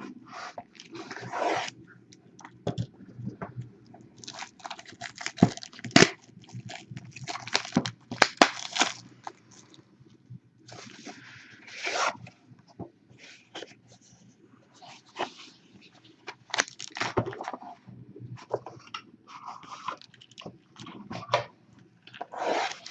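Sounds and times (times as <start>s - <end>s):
shrink-wrap crinkling and tearing: 4.2s - 9.7s, 16.4s - 17.6s.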